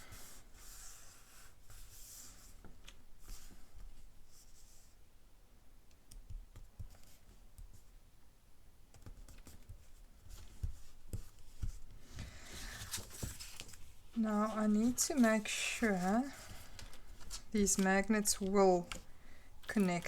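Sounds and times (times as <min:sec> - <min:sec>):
paper rubbing and sliding: 0:12.4 - 0:19.0.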